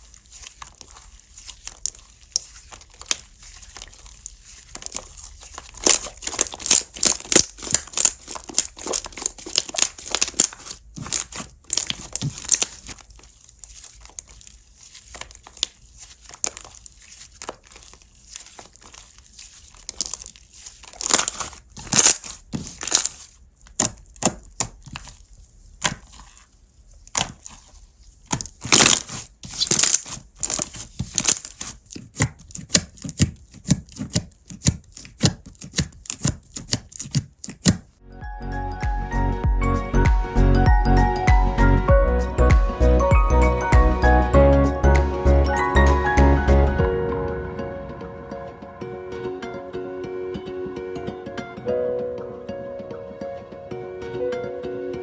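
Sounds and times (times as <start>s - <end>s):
slime crackling and popping: 0.0s - 38.0s.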